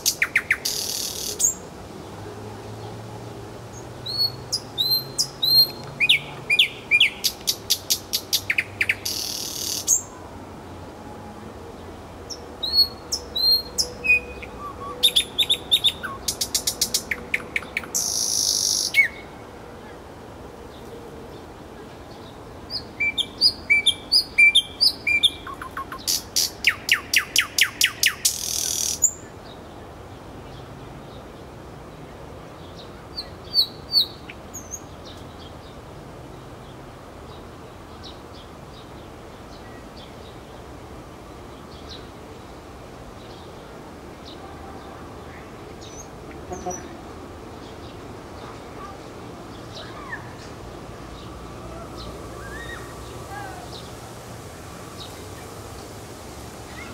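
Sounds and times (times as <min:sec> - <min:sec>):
nightingale singing: 0:00.0 - 0:01.7, 0:03.7 - 0:10.2, 0:12.3 - 0:19.4, 0:22.2 - 0:29.4, 0:51.2 - 0:53.9.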